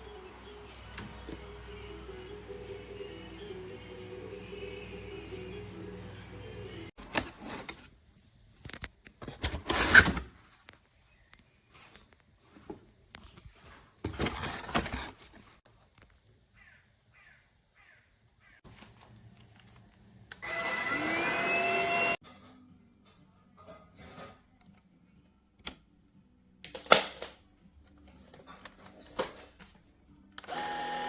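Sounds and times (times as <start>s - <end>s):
vacuum motor whine: 20.4s - 22.2s, 30.4s - 31.0s.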